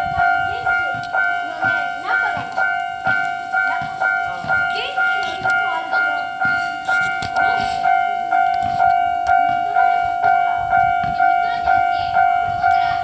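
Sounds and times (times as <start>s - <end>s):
level crossing bell ringing: 0.0s - 13.0s.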